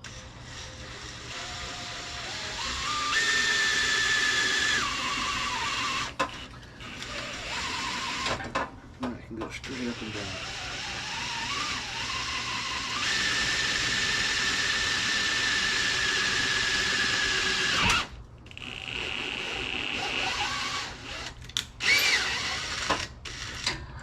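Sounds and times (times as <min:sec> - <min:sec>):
power drill whining: 0:00.0 - 0:08.7, 0:09.5 - 0:23.9.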